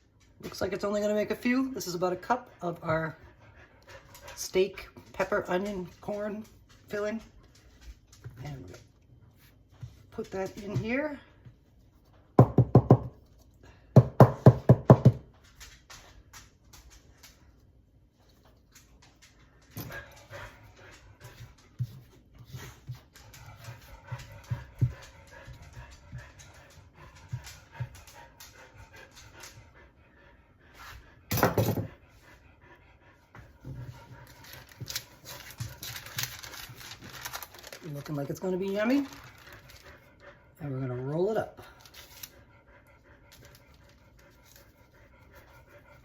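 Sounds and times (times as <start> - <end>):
dog panting: 0.0 - 12.4, 13.5 - 46.0
hollow knocks of cup tapping: 12.4 - 13.2.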